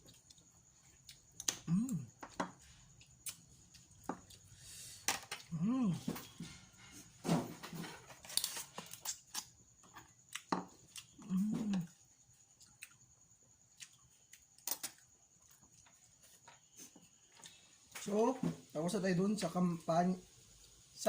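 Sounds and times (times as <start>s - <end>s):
person humming: 1.7s - 2.1s, 5.5s - 6.1s, 11.2s - 11.9s.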